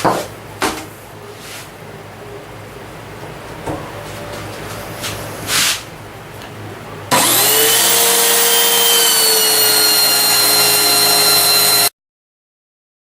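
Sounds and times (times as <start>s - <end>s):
short scraping rub: 4.1s - 5.9s
power tool motor whining: 7.1s - 11.9s.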